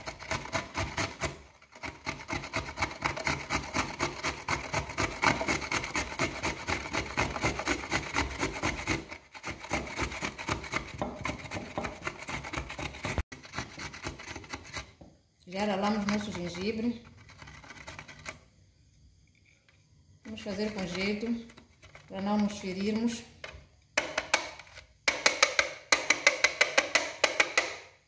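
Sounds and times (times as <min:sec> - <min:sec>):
ginger grated on hand grater: 0:00.0 - 0:18.4, 0:20.3 - 0:23.4.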